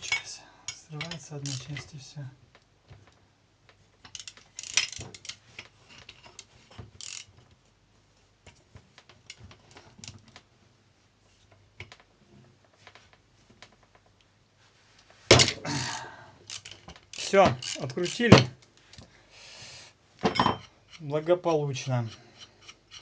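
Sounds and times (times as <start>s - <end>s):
hand tools clicking: 0.0s - 2.0s, 15.8s - 18.4s
small metal parts knocking: 0.0s - 2.0s, 4.0s - 7.3s, 16.5s - 18.5s.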